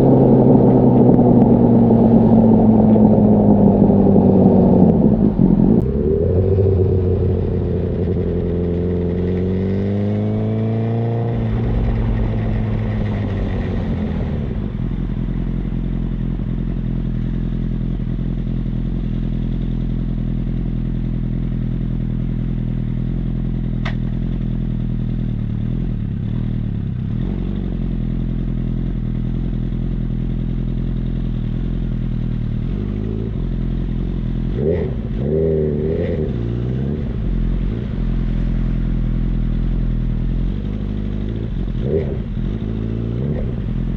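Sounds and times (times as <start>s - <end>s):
motorcycle engine revving and idling: 0.0s - 43.9s
sharp click: 23.8s - 24.2s.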